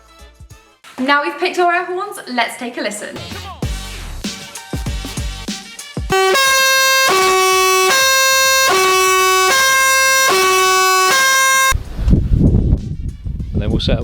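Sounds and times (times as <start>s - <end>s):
dual-tone air horn blasting: 6.1s - 11.8s.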